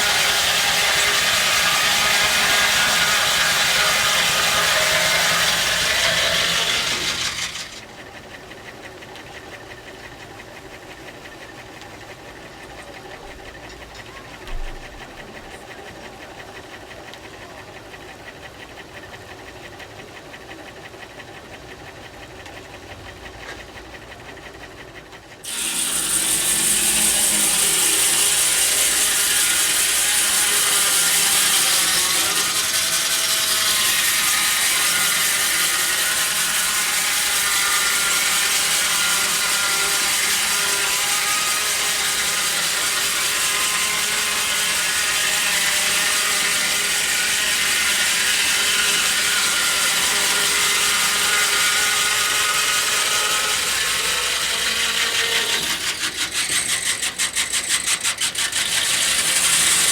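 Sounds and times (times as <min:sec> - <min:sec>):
saw rasping through log: 0:00.0 - 0:08.0, 0:25.4 - 0:59.9
sawmill machinery clatter: 0:00.0 - 0:59.9.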